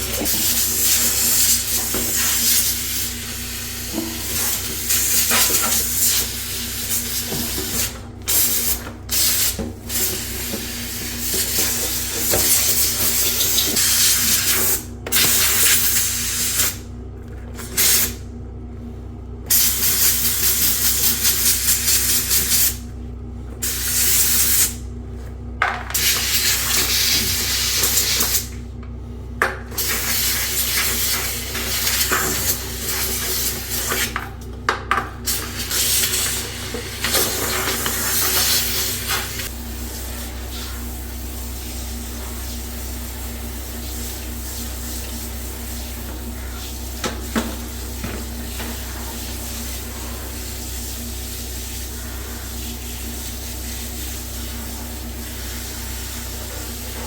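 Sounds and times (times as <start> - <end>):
liquid spraying hiss: 29.8 - 34.1, 35.3 - 40.8.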